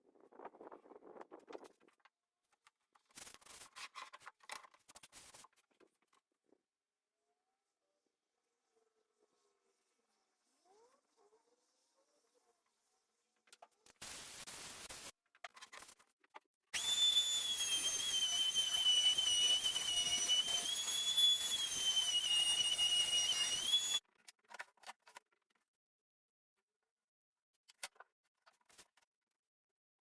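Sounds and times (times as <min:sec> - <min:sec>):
electric power saw cutting wood: 0:16.8 - 0:24.0.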